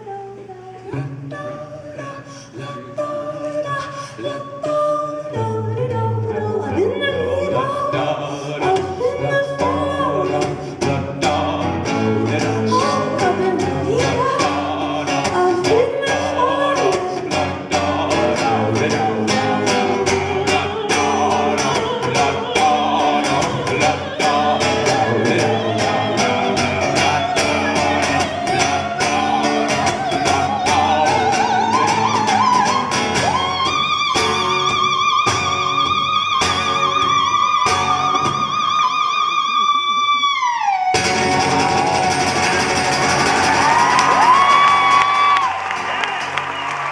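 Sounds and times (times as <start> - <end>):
woman singing wordless melody: 0.0 - 10.6, 12.1 - 35.9
band playing rhythmic accompaniment: 10.3 - 39.8, 40.8 - 46.9.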